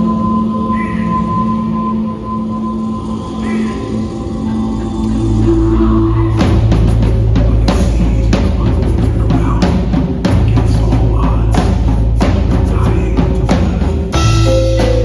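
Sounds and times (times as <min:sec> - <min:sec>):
held notes over deep bass: 0:03.3 - 0:15.0
drum kit beat: 0:06.3 - 0:15.0.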